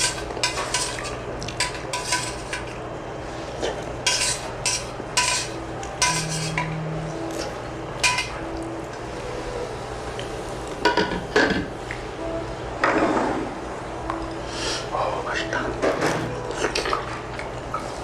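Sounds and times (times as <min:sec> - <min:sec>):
utensils clinking against bowls: 0:00.0 - 0:02.8, 0:03.6 - 0:08.6.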